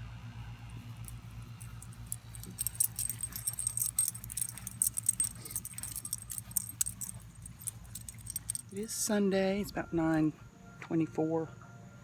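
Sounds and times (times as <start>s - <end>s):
steady low hum: 0.0s - 9.0s
small metal pieces jingling: 1.0s - 8.9s.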